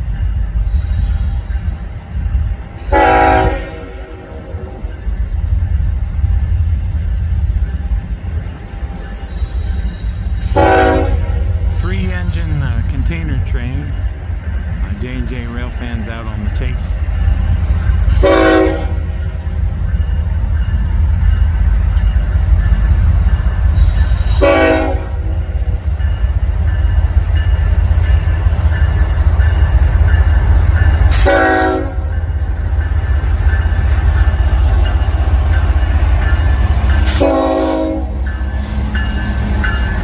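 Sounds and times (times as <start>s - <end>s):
locomotive horn blasts: 2.9s - 4.4s, 10.6s - 11.5s, 18.2s - 19.1s, 24.4s - 25.3s, 31.1s - 32.2s, 37.1s - 38.2s.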